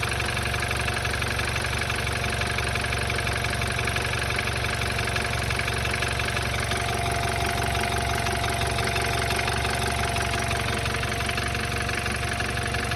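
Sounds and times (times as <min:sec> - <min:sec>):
car engine idling with knocking: 0:00.0 - 0:12.9.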